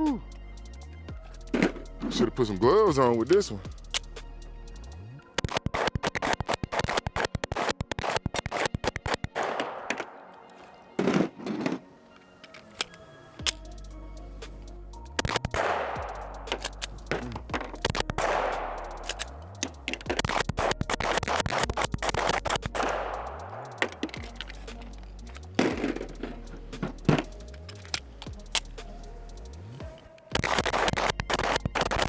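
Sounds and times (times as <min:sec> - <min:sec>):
background music with bass: 0:00.0 - 0:09.8, 0:12.8 - 0:32.0
pistol shots: 0:05.4 - 0:10.3, 0:15.2 - 0:19.2, 0:20.2 - 0:24.2.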